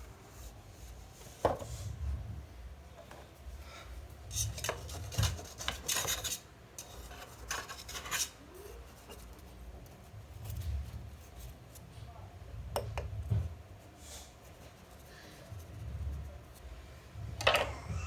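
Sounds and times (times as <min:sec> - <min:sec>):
utensil scraping a dish: 0:04.3 - 0:09.3.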